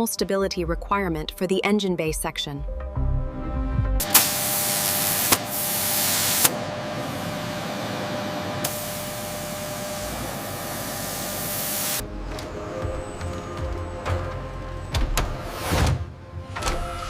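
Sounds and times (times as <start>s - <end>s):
gas spray hissing: 4.0s - 12.0s.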